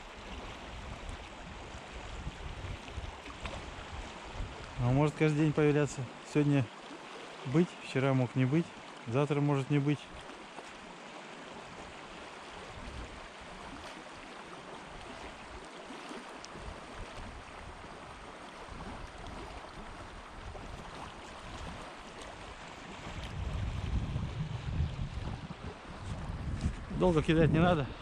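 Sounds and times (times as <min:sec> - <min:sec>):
river water rushing: 0:00.0 - 0:27.0.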